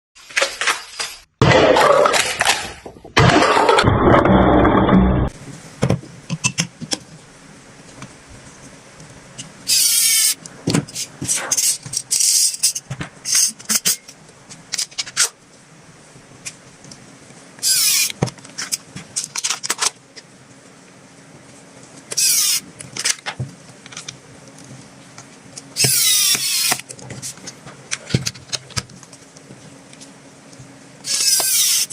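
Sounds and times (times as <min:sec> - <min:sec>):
noisy bursts: 0:01.4 - 0:11.7.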